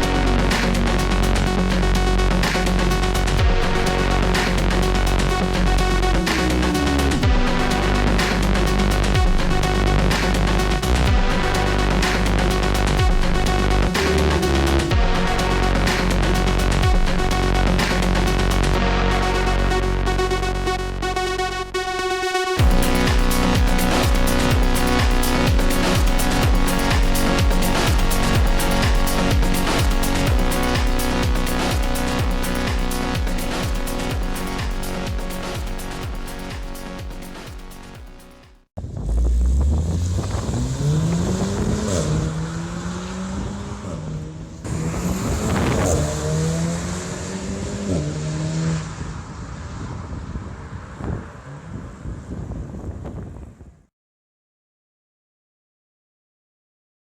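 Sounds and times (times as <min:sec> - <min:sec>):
ticking hi-hats: 0:00.0 - 0:18.8, 0:22.6 - 0:38.6
electronic dance music: 0:00.0 - 0:38.7, 0:44.8 - 0:47.0
deep kick drum: 0:01.4 - 0:04.4, 0:05.2 - 0:18.1, 0:22.6 - 0:39.8
car engine accelerating hard: 0:38.8 - 0:52.3.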